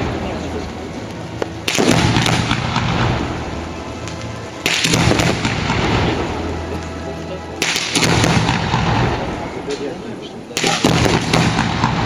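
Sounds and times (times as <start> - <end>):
fireworks crackling: 0.0 - 12.0
firework shells bursting: 1.4 - 3.4, 4.0 - 6.4, 7.6 - 9.3, 10.6 - 12.0.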